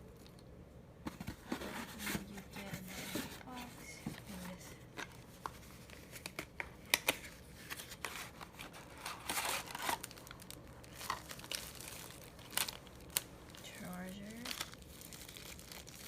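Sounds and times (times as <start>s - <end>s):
plastic and paper crinkling: 1.0s - 16.0s.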